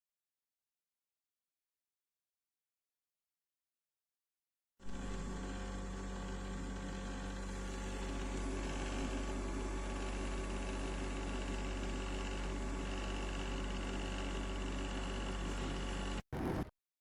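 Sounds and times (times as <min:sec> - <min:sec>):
machine hum with fan hiss: 0:04.9 - 0:16.7.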